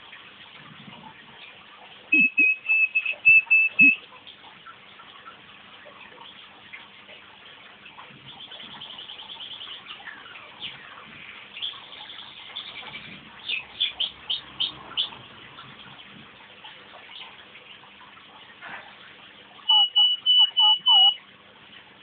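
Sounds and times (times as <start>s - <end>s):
canary singing: 2.1s - 4.0s, 19.7s - 21.2s.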